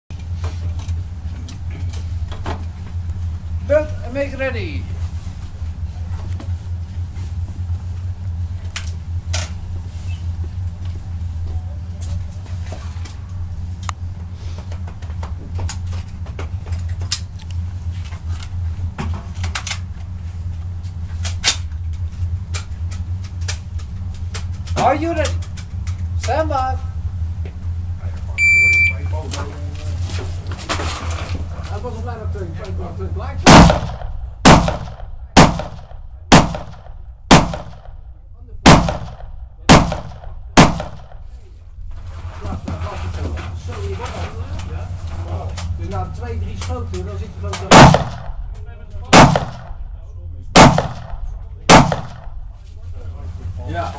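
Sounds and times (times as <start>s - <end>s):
steady low hum: 0.1s - 53.9s
rifle shots echoing: 33.4s - 37.9s, 38.6s - 41.2s, 47.7s - 48.5s, 49.1s - 49.8s, 50.6s - 52.4s.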